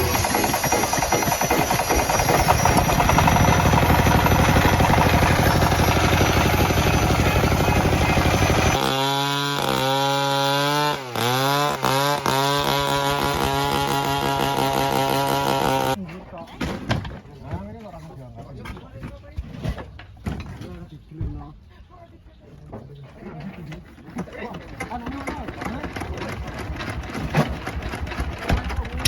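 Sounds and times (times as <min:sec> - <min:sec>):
diesel engine knocking roughly: 0:00.0 - 0:08.8, 0:24.8 - 0:29.0.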